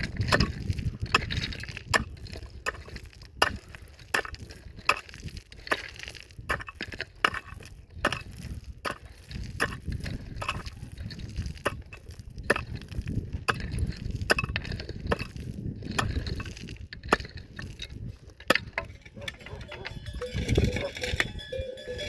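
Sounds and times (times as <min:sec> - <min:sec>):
hand tool striking: 0:18.5 - 0:22.0.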